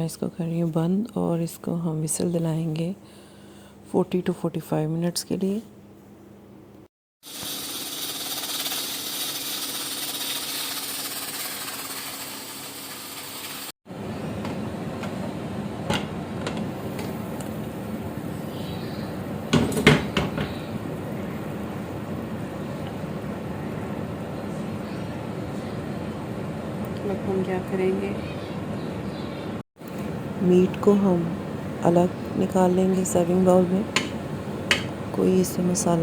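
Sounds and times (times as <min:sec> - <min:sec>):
pressure cooker hissing steam: 0:07.2 - 0:13.7.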